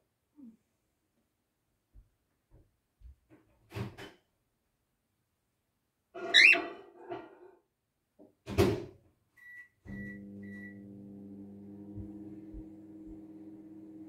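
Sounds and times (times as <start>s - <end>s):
short harsh bird call: 6.3s - 6.6s
steady low hum: 9.9s - 14.0s.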